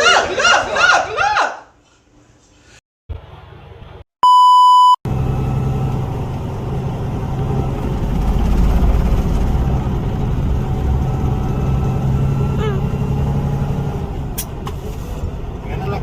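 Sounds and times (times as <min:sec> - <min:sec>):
loud electronic beep: 0:04.2 - 0:05.0
road noise of driving: 0:05.1 - 0:16.0
truck engine running: 0:05.1 - 0:16.0.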